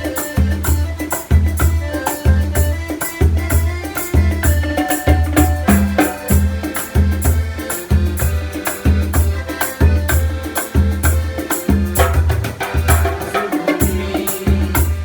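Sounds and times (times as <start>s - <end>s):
calypso band music: 0.0s - 15.0s
hand percussion: 0.0s - 15.0s
bouncing bass line: 3.4s - 10.3s.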